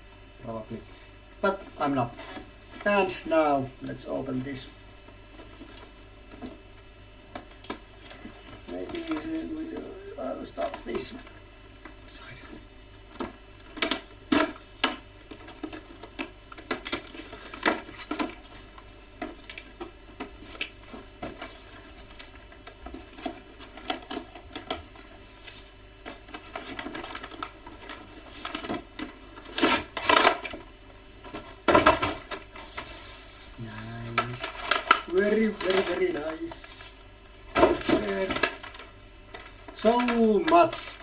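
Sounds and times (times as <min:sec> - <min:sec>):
cardboard and plastic packaging tearing: 0:13.7 - 0:19.8, 0:20.4 - 0:30.6, 0:33.8 - 0:36.9, 0:37.6 - 0:40.8.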